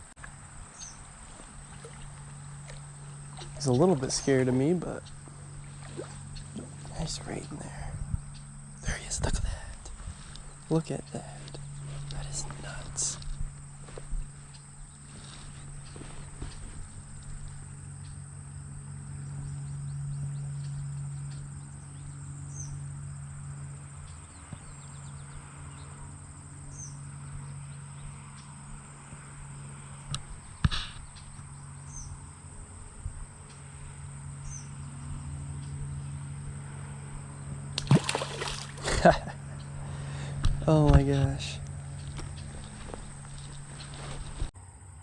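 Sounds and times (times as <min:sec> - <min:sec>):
creek water running: 0:00.0 - 0:17.8, 0:37.7 - 0:44.5
insects trilling: 0:00.0 - 0:45.0
bird chirps: 0:00.7 - 0:17.6.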